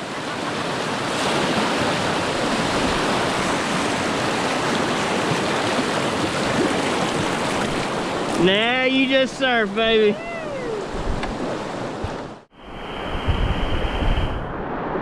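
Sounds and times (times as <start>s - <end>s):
whitewater rushing: 0.0s - 12.0s.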